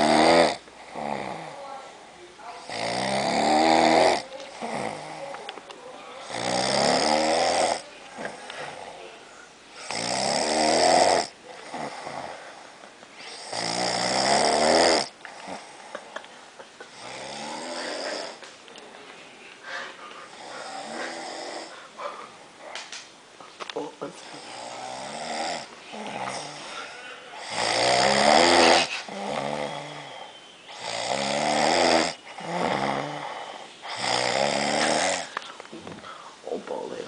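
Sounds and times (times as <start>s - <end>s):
man snoring loudly: 0.0s - 1.6s, 2.6s - 5.2s, 6.2s - 7.8s, 9.8s - 12.4s, 13.2s - 15.8s, 16.9s - 18.4s, 20.3s - 21.7s, 24.4s - 26.7s, 27.3s - 35.4s.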